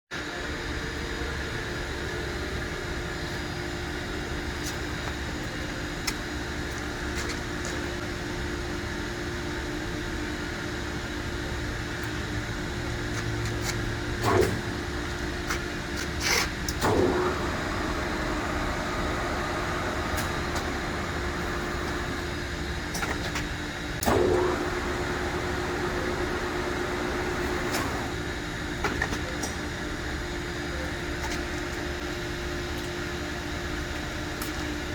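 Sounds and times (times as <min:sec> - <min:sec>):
lathe running: 0:16.8 - 0:22.9, 0:24.0 - 0:28.4.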